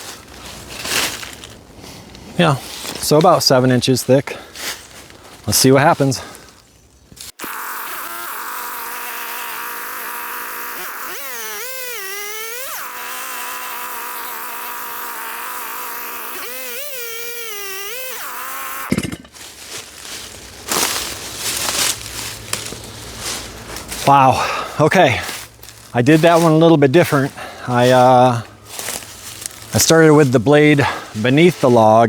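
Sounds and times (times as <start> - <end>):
chainsaw cutting log: 7.2 - 19.3
rustling: 18.1 - 24.2, 27.9 - 30.4.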